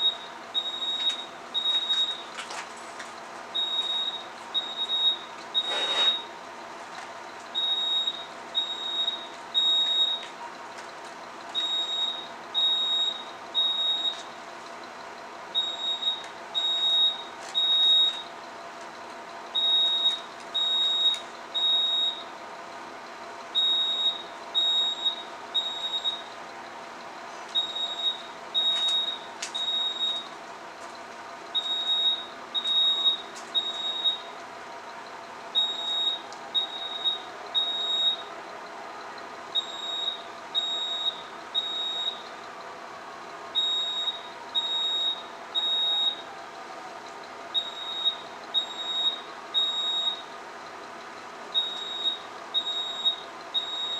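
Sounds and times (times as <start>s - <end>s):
fire alarm beeps: 0.0s - 2.4s, 3.5s - 6.4s, 7.5s - 10.4s, 11.5s - 14.5s, 15.5s - 18.7s, 19.5s - 22.4s, 23.5s - 26.6s, 27.5s - 30.4s, 31.5s - 34.4s, 35.5s - 38.4s, 39.0s - 42.6s, 43.5s - 46.4s, 47.5s - 50.4s, 51.5s - 53.9s.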